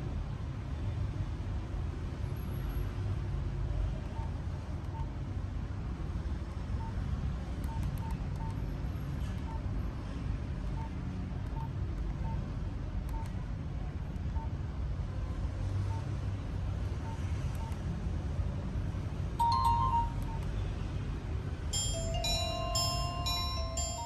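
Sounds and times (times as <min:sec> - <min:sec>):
phone keypad beeps: 0:19.4 - 0:20.5, 0:21.8 - 0:24.0.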